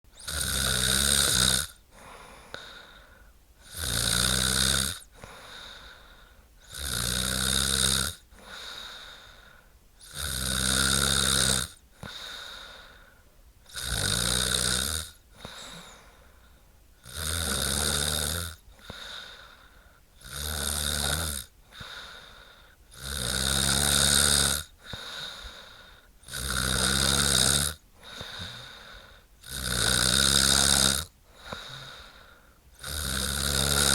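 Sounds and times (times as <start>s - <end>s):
woman snoring: 0.2s - 3.0s, 3.6s - 6.0s, 6.7s - 9.4s, 10.0s - 13.0s, 13.7s - 16.2s, 17.0s - 33.9s
soft breath: 1.9s - 3.4s, 5.2s - 6.5s, 8.3s - 9.8s, 11.9s - 13.4s, 15.3s - 16.8s, 18.7s - 20.1s, 21.6s - 22.8s, 24.8s - 26.1s, 28.0s - 29.3s, 31.2s - 32.6s.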